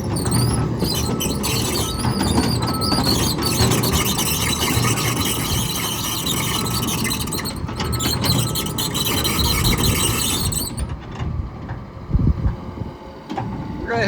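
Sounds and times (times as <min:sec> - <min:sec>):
high-pitched metallic squeal: 0:00.0 - 0:11.0
excavator diesel engine: 0:00.0 - 0:12.0.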